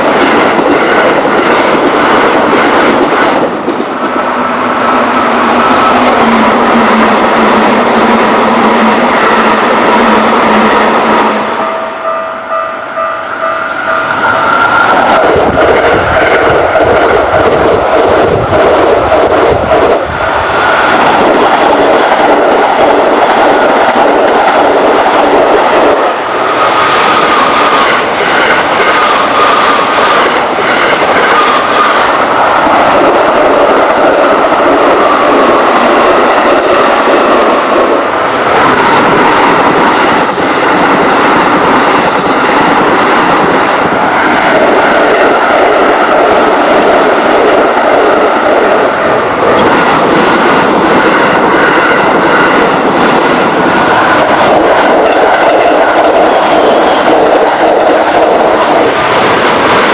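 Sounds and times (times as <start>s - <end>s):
freight train rumbling past: 0.0s - 59.9s.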